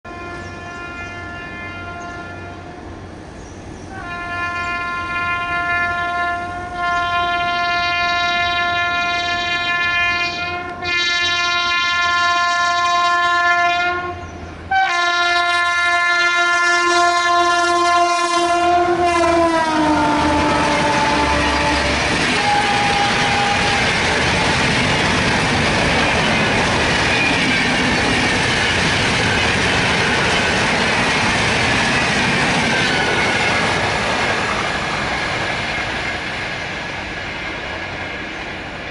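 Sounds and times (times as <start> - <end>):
locomotive air horn blasts: 0.1 - 2.9, 3.9 - 24.1.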